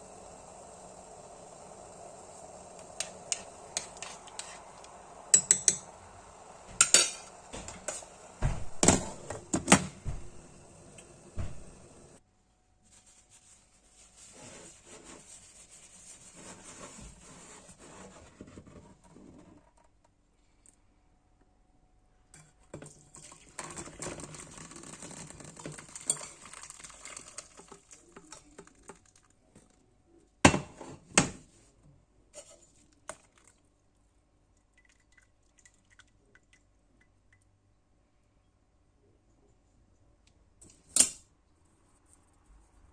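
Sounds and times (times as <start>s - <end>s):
pot and utensils handled with liquid: 3.0s - 6.0s, 6.7s - 8.2s, 22.3s - 29.8s, 32.3s - 33.6s.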